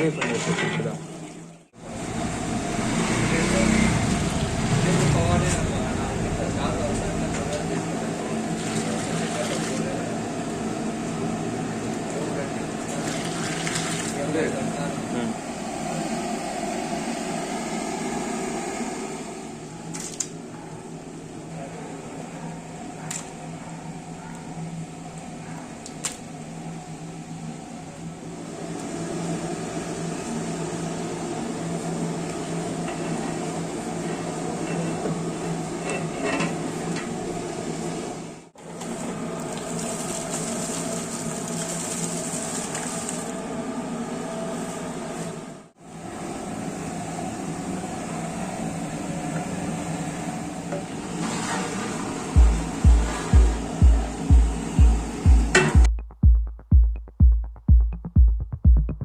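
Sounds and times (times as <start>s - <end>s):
machine hum: 1.8s - 11.9s, 12.5s - 21.8s, 51.0s - 59.0s
rushing noise: 15.3s - 19.6s
music with deep kick-drum beat: 52.4s - 59.0s.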